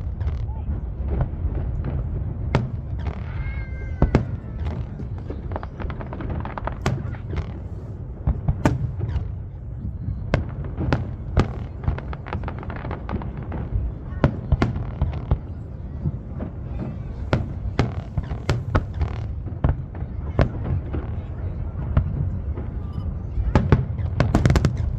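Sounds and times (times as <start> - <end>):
fireworks bangs and crackles: 0.0 - 24.9.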